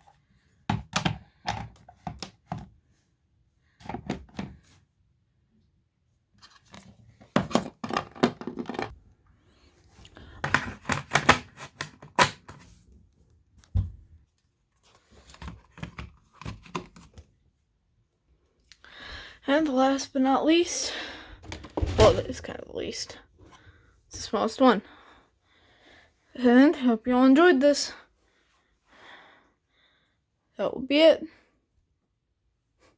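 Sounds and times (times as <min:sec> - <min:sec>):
plastic clicks and scrapes: 0:10.2 - 0:12.7.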